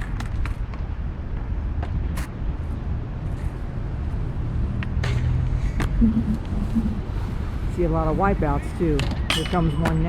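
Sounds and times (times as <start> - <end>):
steady low rumble: 5.4 - 8.9.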